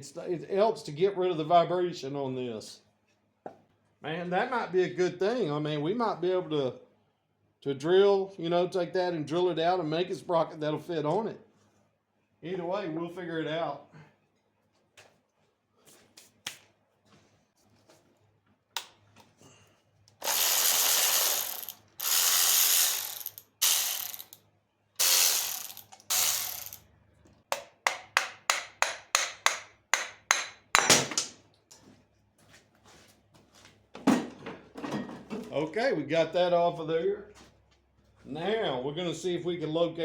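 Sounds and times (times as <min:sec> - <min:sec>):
ratchet wrench ratcheting: 0:20.2 - 0:24.4, 0:25.0 - 0:26.9
separate ratchet clicks: 0:20.2 - 0:24.4, 0:25.0 - 0:26.9.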